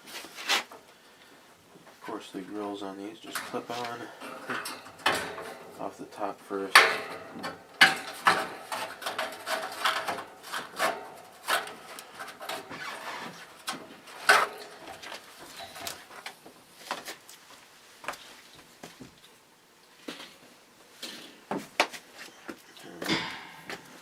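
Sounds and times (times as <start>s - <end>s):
metal grille clicks and clanks: 3.2s - 16.4s, 23.0s - 24.0s.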